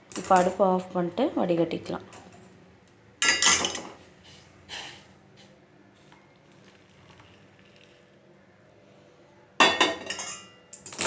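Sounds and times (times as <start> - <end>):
kitchen utensils clattering: 0.1 - 0.9, 3.2 - 4.0, 9.6 - 11.0.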